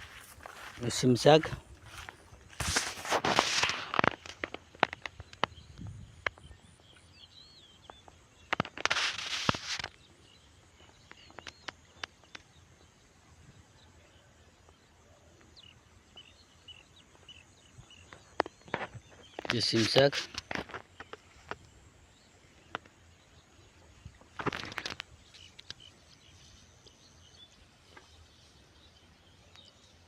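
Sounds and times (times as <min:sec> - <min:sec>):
birds chirping faintly: 0:00.0 - 0:02.6, 0:03.3 - 0:30.0
close rustling: 0:00.0 - 0:05.2, 0:08.6 - 0:10.0.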